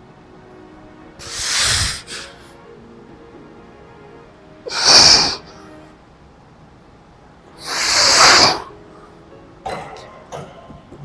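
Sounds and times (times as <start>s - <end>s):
faint background music: 0.0s - 11.0s
man breathing heavily: 1.2s - 2.7s.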